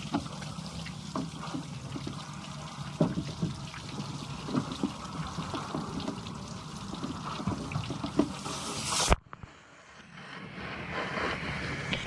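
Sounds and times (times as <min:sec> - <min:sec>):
water pouring and splashing: 0:00.0 - 0:09.2.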